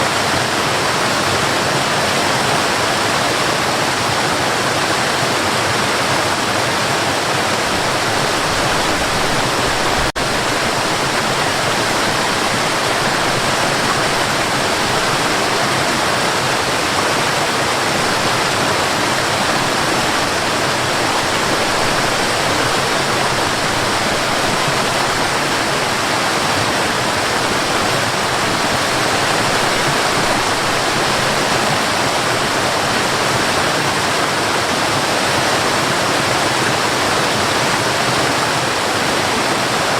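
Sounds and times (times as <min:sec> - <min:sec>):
river rushing: 0:00.0 - 0:39.9.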